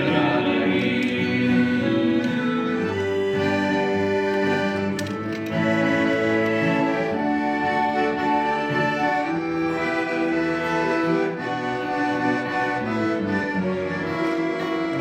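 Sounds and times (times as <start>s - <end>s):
instrumental music with sustained chords: 0.0s - 15.0s.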